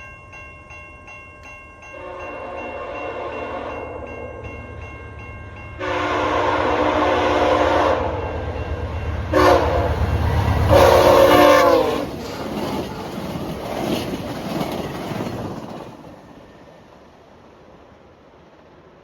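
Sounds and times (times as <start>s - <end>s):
train horn blasts: 1.9s - 4.3s, 5.8s - 8.6s, 9.2s - 12.1s
train rushing past: 1.9s - 19.0s.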